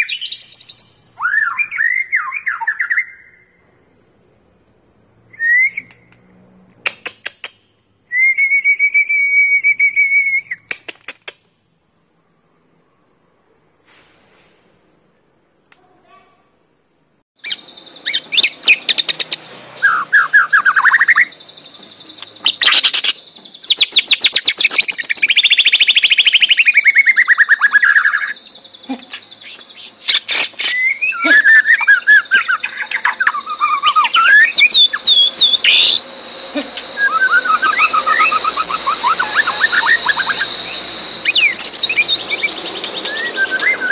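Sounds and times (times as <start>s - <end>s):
songbird singing trills and whistles: 0.0s - 3.6s, 17.4s - 43.9s.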